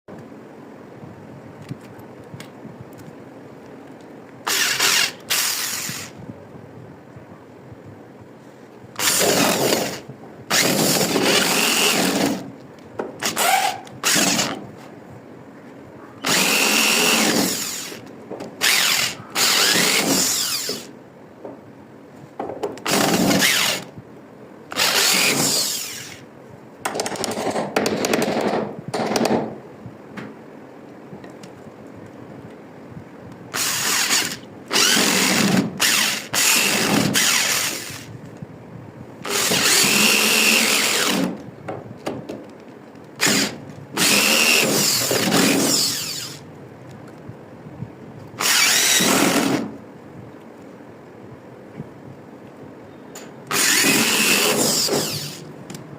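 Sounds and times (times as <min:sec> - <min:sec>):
electric drill running: 0:04.5 - 0:06.2, 0:09.0 - 0:12.4, 0:13.2 - 0:14.6, 0:16.2 - 0:18.0, 0:18.6 - 0:20.9, 0:22.9 - 0:23.9, 0:24.7 - 0:26.2, 0:33.6 - 0:38.1, 0:39.2 - 0:41.3, 0:43.2 - 0:46.4, 0:48.4 - 0:49.6, 0:53.5 - 0:55.5.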